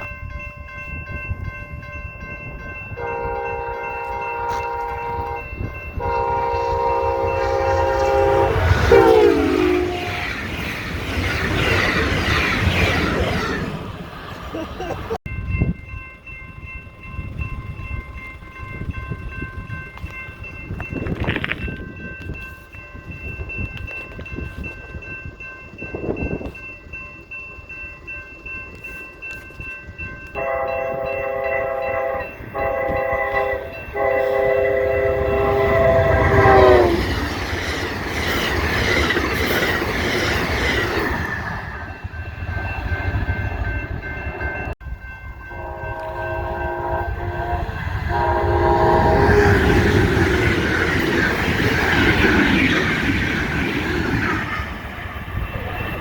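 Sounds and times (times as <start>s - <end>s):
train chime horn: 0.0s - 10.4s, 15.3s - 37.3s, 41.9s - 51.0s
train rushing by: 0.0s - 56.0s.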